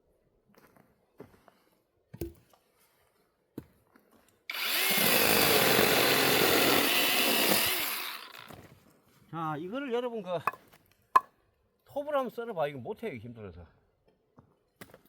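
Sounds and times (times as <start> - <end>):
chainsaw cutting firewood: 4.5 - 8.6.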